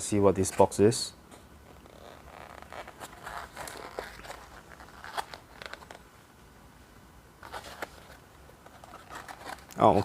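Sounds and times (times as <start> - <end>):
packaging crinkling and rustling: 1.8 - 6.0, 7.4 - 10.0.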